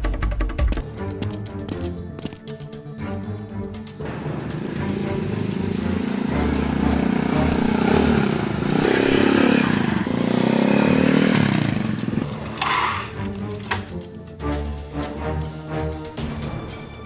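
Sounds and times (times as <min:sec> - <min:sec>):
vehicle engine revving: 0:04.0 - 0:13.8.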